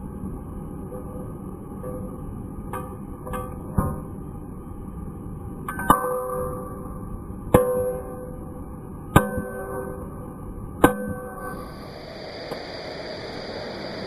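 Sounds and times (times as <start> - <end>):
hammer striking metal with ringing: 5.7 - 6.9, 7.5 - 8.5, 9.1 - 10.2, 10.8 - 11.6.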